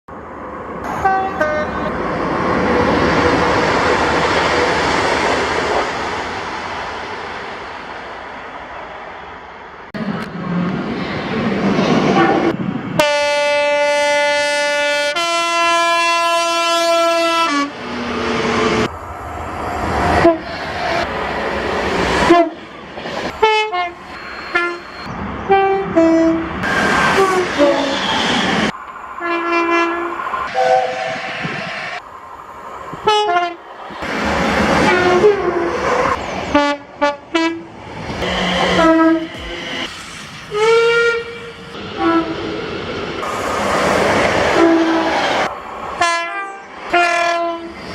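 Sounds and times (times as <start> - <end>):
train passing: 0.1 - 47.9
train horn blasts: 1.0 - 1.9, 12.2 - 17.8, 23.3 - 26.5, 29.2 - 31.3, 36.5 - 39.4, 46.0 - 47.7.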